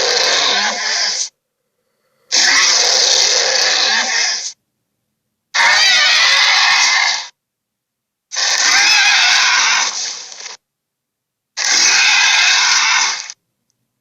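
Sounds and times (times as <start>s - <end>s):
dragon roars: 0.0s - 1.3s, 1.9s - 4.5s, 11.6s - 13.4s.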